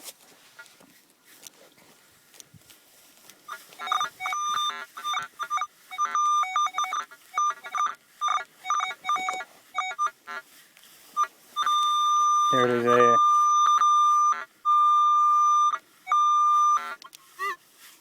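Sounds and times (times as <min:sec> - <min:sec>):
metal detector beeps: 0:03.5 - 0:10.2, 0:11.1 - 0:17.6.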